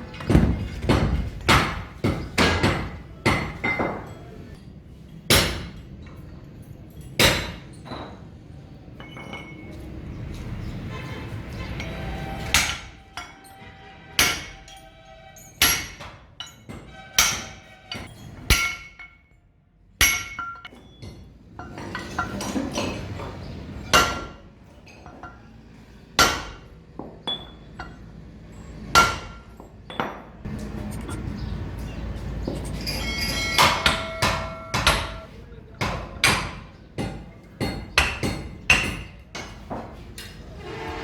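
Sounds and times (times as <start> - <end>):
hammer striking steel: 0.2 - 4.1, 5.3 - 5.9, 7.2 - 8.0, 11.7 - 19.4, 20.0 - 23.0, 23.8 - 24.4, 26.2 - 28.0, 28.9 - 30.3, 32.8 - 39.7.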